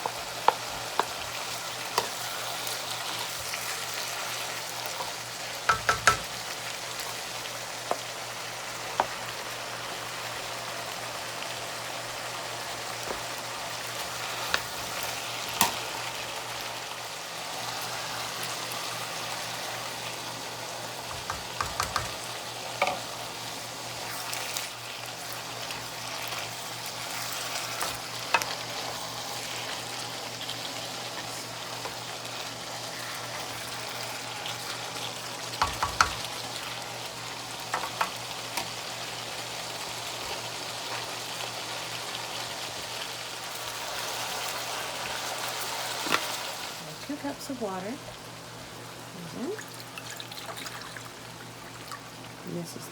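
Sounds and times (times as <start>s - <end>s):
food sizzling in a frying pan: 0.0s - 52.9s
utensil knocking against pan: 5.7s - 6.3s, 21.1s - 22.2s.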